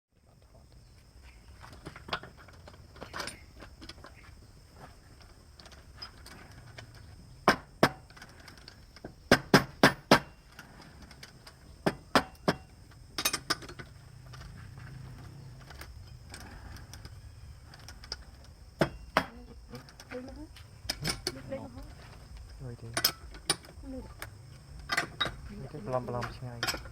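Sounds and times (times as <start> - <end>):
sharp knocks: 7.4 - 8.0, 9.3 - 10.4, 11.8 - 12.7.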